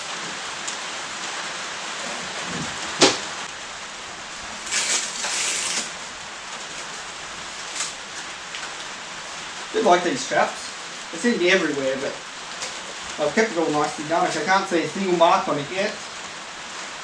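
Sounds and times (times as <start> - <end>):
rain hissing: 0.0 - 17.0
rustling and scraping: 4.5 - 9.8.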